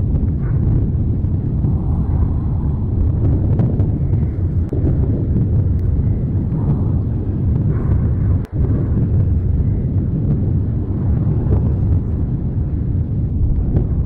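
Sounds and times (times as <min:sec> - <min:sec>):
volcano deep rumble: 0:00.0 - 0:14.0.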